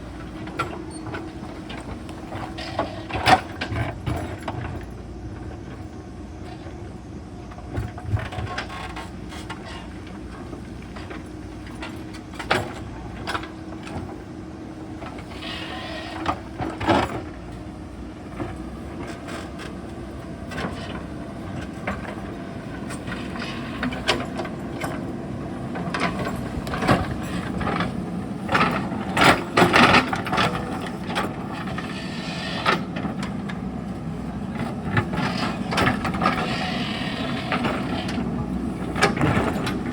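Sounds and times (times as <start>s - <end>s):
diesel engine under load: 0.0s - 39.9s.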